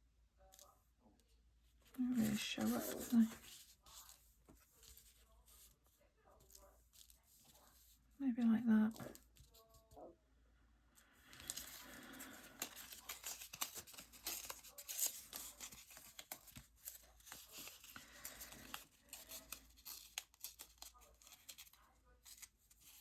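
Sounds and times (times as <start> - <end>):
paper rustling and crackling: 2.1 - 8.0, 11.3 - 23.0.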